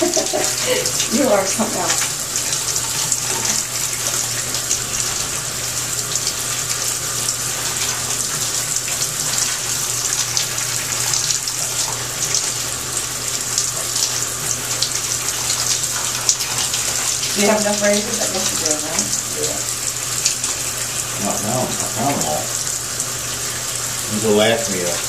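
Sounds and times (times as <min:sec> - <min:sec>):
shower water spraying: 0:00.0 - 0:25.0.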